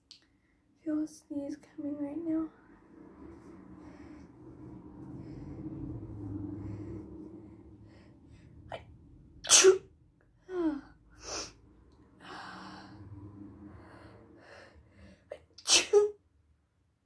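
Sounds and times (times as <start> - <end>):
noisy breathing: 2.6 - 9.3, 11.1 - 15.3
person sneezing: 9.5 - 9.8, 15.6 - 16.1.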